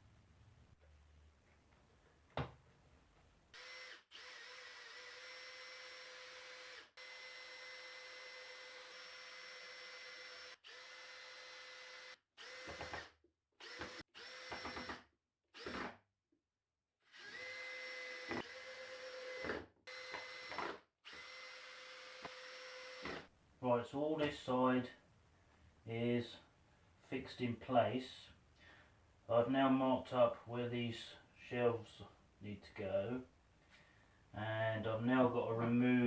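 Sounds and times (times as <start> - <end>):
power drill driving screws: 3.6 - 16.0, 17.1 - 23.3.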